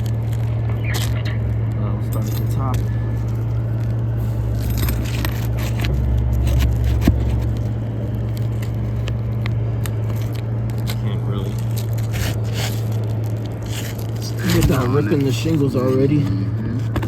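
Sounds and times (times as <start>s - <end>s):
low hum: 0.0s - 17.0s.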